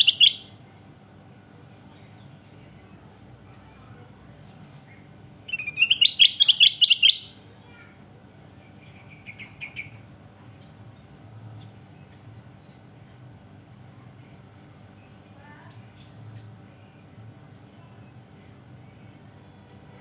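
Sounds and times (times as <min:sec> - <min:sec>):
bird chirping song: 0:00.0 - 0:00.6, 0:05.5 - 0:07.4, 0:08.6 - 0:10.0.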